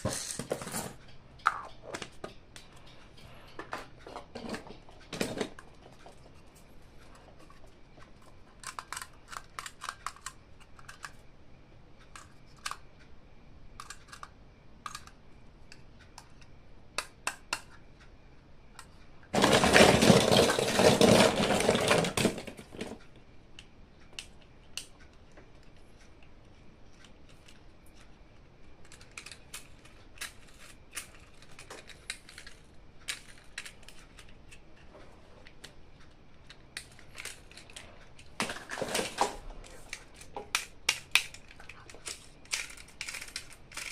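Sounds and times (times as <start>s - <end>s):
toys and packaging handled: 19.4s - 23.0s, 36.5s - 43.9s.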